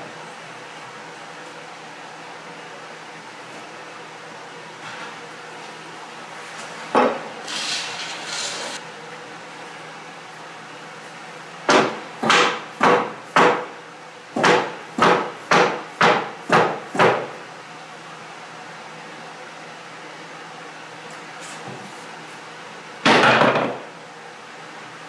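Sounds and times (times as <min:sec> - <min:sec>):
brief scraping: 0:07.5 - 0:08.8.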